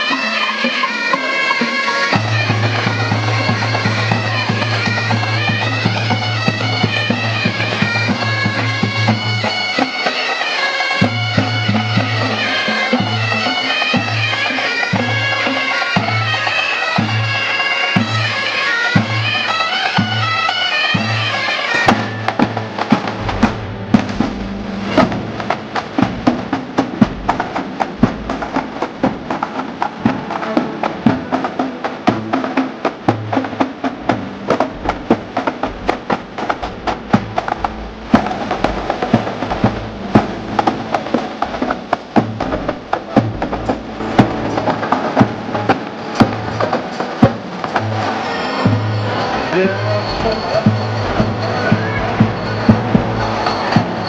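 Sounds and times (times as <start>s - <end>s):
bagpipes playing melody: 0.0s - 26.3s, 43.1s - 54.0s
drums playing: 0.0s - 54.0s.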